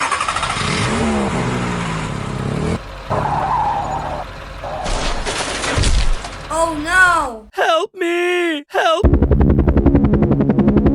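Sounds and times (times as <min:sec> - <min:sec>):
engine revving: 0:00.0 - 0:07.2.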